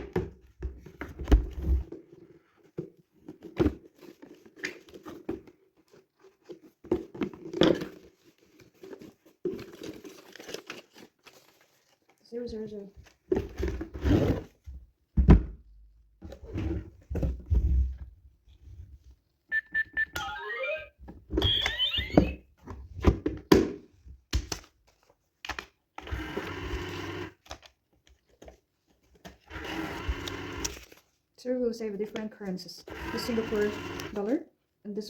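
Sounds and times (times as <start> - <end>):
electronic tone melody: 19.5 - 22.4.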